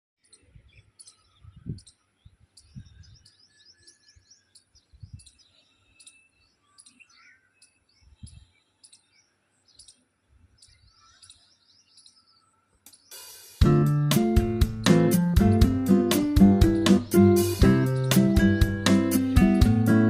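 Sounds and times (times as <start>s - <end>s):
birds chirping: 0.2s - 20.0s
low muffled thumps: 13.6s - 20.0s.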